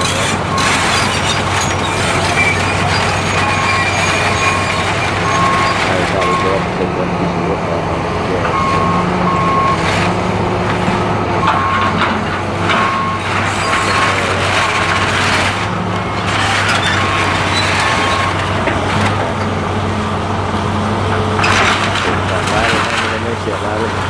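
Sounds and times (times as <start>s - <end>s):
heavy machine engine running: 0.0s - 24.0s
backup alarm beeping: 2.3s - 6.7s, 8.4s - 9.9s.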